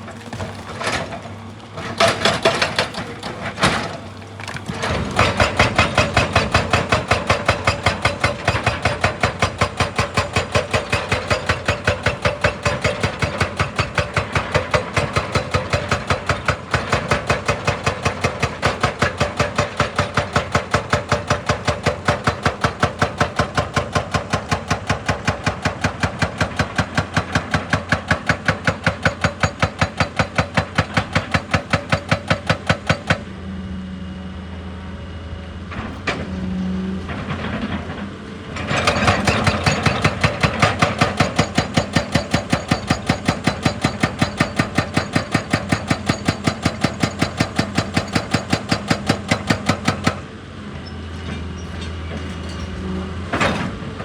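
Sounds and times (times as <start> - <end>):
hydraulic breaker hammering rock: 0.1 - 33.4, 37.1 - 50.4
excavator engine running: 0.1 - 54.0.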